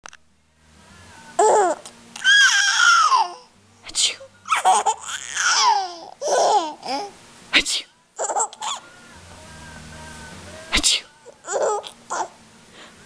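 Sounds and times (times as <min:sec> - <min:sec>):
baby squealing and laughing: 0:01.4 - 0:03.5, 0:04.5 - 0:07.1, 0:08.2 - 0:08.8, 0:11.4 - 0:12.4.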